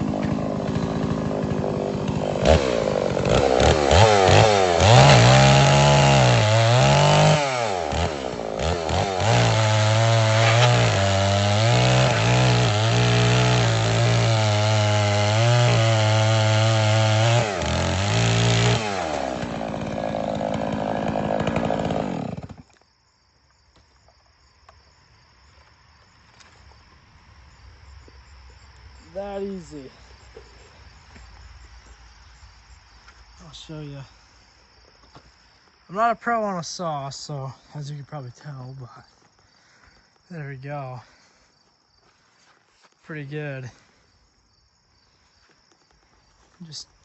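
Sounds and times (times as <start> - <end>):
chainsaw cutting wood: 0.0 - 22.9.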